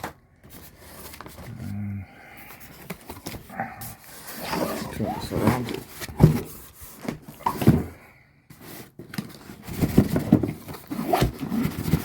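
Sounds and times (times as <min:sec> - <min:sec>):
cardboard box scraping and rustling: 0:03.0 - 0:12.0.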